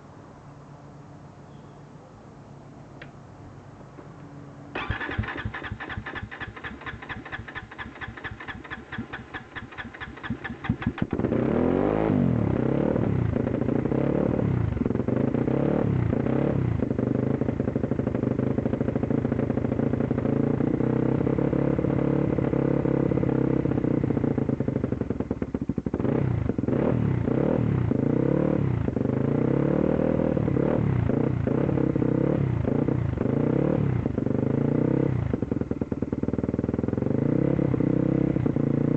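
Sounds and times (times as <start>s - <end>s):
engine cranking: 4.7s - 11.2s
engine running roughly: 4.7s - 11.5s.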